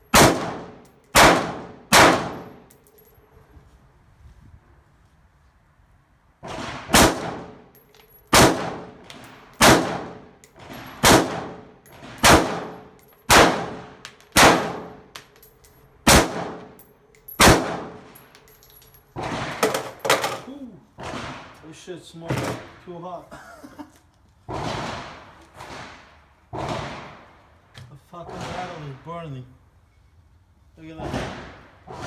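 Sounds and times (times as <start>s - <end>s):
rifle shots with ringing tail: 0.1s - 2.7s, 6.5s - 15.1s, 16.0s - 18.6s.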